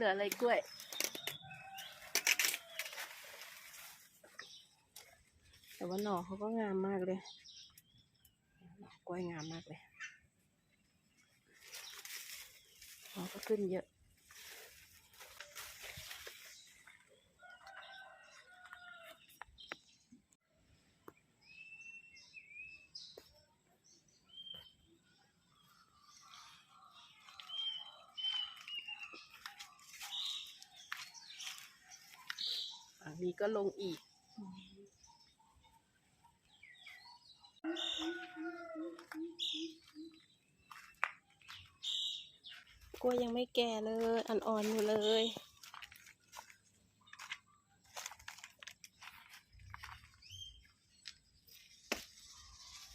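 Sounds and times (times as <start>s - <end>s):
birds chirping: 0.0s - 3.0s, 21.0s - 48.2s
faint rooster crowing: 17.4s - 19.3s, 37.6s - 39.2s.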